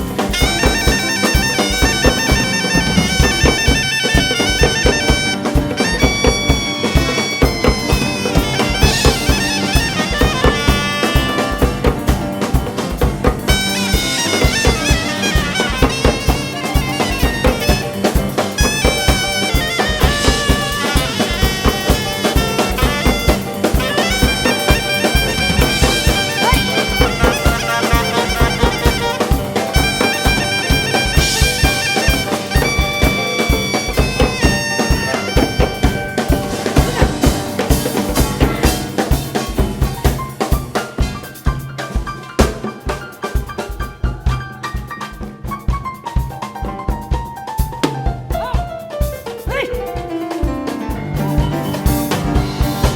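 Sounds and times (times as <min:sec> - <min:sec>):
wavering wind instrument melody: 0:00.0 - 0:12.2, 0:13.5 - 0:37.7
steady drum beat: 0:00.0 - 0:52.9.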